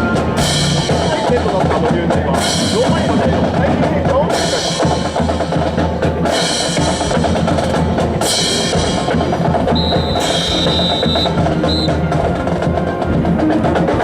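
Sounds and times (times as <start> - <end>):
percussion-heavy music with bass: 0.0 - 14.0
high held tone: 9.7 - 12.0.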